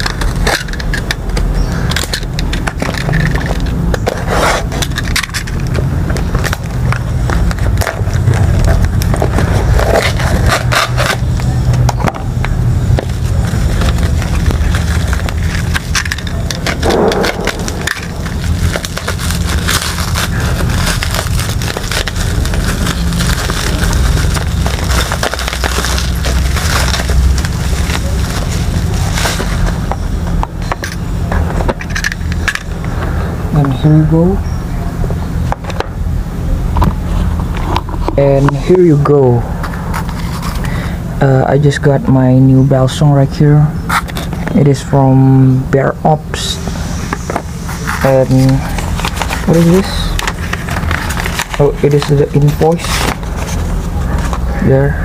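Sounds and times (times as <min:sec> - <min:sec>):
packaging rustling and tearing: 0:00.0 - 0:11.5, 0:12.4 - 0:32.7, 0:47.2 - 0:54.5
low handling rumble: 0:11.3 - 0:44.8.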